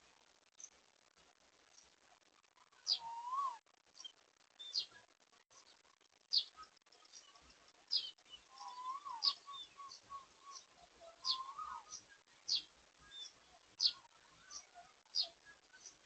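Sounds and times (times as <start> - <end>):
lower wavering bird call: 2.9 - 3.6, 8.5 - 12.0
high sharply falling bird call: 8.6 - 12.6.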